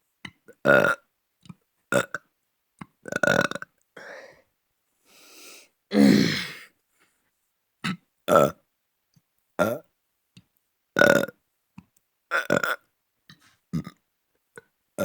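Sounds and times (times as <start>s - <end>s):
person burping: 0.5s - 1.1s, 3.1s - 4.2s, 5.9s - 6.7s, 7.8s - 8.6s, 12.3s - 12.8s, 13.8s - 14.0s
breathy noises: 4.0s - 4.4s.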